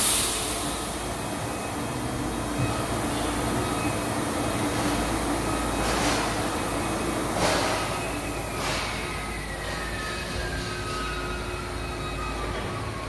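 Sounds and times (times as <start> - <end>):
air hiss bursts: 0.0 - 1.0
packaging machinery humming: 0.0 - 13.0.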